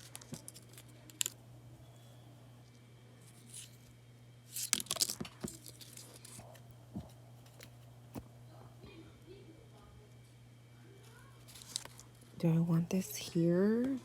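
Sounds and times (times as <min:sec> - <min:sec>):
low electrical hum: 0:00.0 - 0:14.0
craft pieces clicking and rustling: 0:04.5 - 0:06.4.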